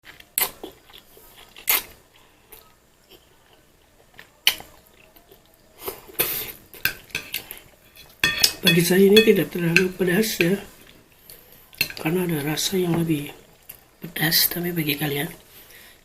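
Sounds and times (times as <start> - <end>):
faint chewing: 0.0 - 8.6, 13.4 - 14.0.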